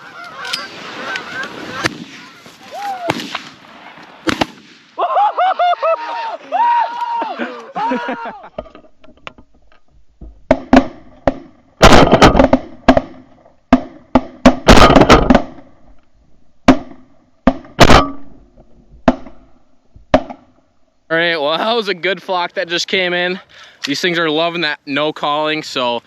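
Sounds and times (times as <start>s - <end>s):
shotgun shots: 1.7s - 2.4s, 3.0s - 5.0s, 10.6s - 15.6s.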